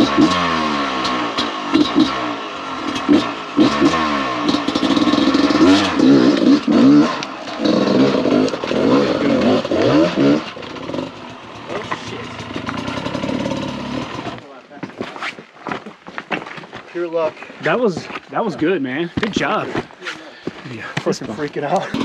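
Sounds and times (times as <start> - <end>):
dirt bike engine revving: 0.0 - 14.5, 21.7 - 22.0.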